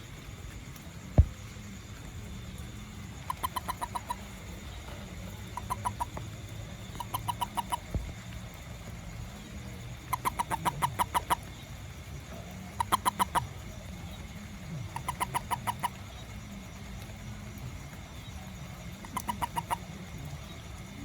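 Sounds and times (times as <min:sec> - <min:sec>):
steady low hum: 0:00.0 - 0:21.0
animal calling in rapid notes: 0:03.2 - 0:04.6, 0:05.4 - 0:08.0, 0:10.0 - 0:11.5, 0:12.8 - 0:13.6, 0:14.9 - 0:16.2, 0:19.0 - 0:19.9.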